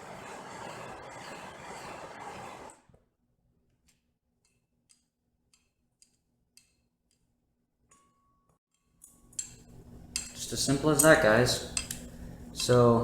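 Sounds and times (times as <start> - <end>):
steady rushing heat source: 0.0 - 2.9.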